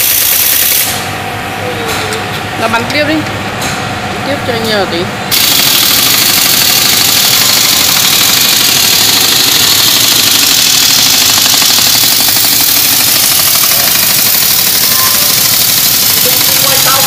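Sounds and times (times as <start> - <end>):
loud mechanical noise with hiss: 0.0 - 17.0.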